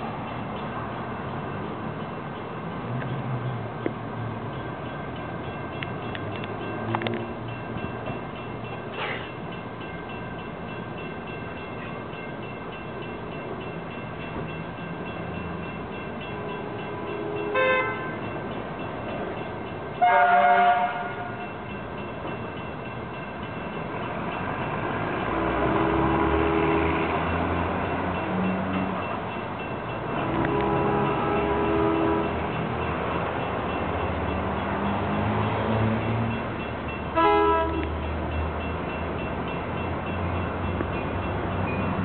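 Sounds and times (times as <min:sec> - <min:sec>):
train engine and rail noise: 0:00.0 - 0:42.0
train horn blasts: 0:17.0 - 0:18.3, 0:20.0 - 0:21.5, 0:30.2 - 0:32.5, 0:37.1 - 0:38.0.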